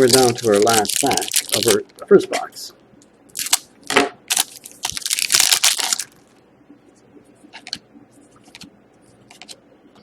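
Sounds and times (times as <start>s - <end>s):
foil wrapper tearing and crinkling: 0.0s - 1.8s, 3.4s - 3.7s, 4.3s - 6.2s.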